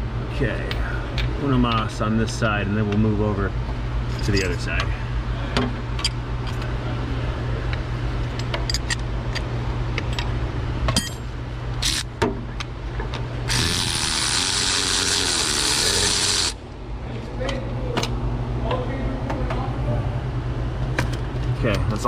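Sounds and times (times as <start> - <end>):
electric ratchet running: 11.8 - 12.1, 13.5 - 16.6.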